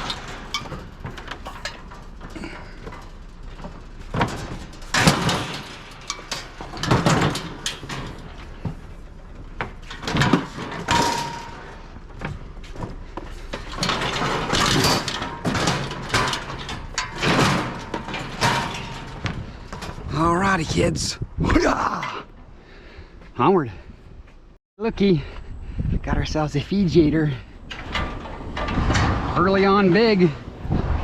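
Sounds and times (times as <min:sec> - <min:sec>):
scrap metal clattering: 0:00.0 - 0:21.0, 0:27.6 - 0:30.5.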